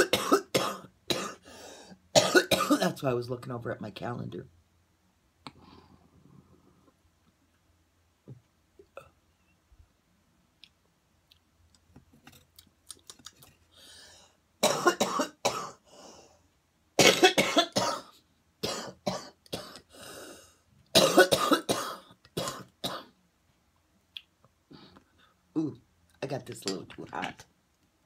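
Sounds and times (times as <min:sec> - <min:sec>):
woman coughing hard: 0:00.0 - 0:01.4, 0:02.2 - 0:02.9, 0:14.6 - 0:15.8, 0:17.0 - 0:19.8, 0:21.0 - 0:23.1.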